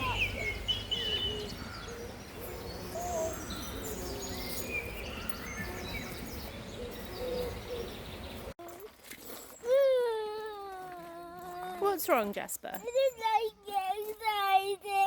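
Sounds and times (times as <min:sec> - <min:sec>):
lower bird calls: 0:00.0 - 0:08.5
birds singing and chirping: 0:00.0 - 0:08.6.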